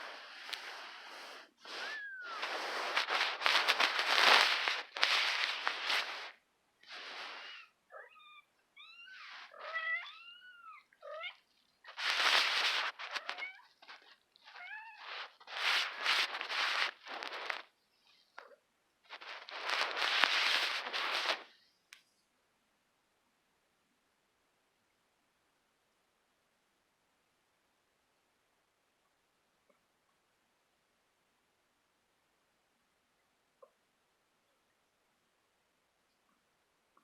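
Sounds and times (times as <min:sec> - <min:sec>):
rustling hiss-like noise: 0:00.0 - 0:07.8, 0:08.8 - 0:22.3.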